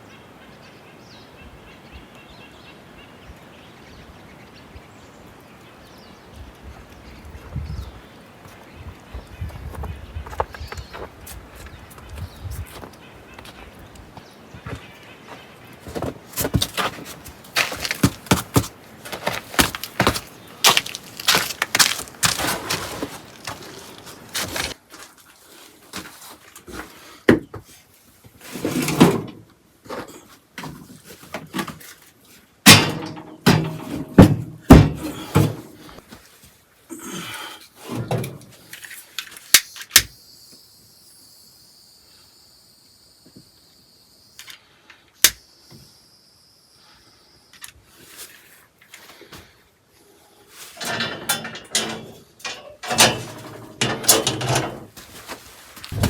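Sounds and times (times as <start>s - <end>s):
knocks and thumps of hand work: 15.9s - 23.7s, 32.7s - 36.0s.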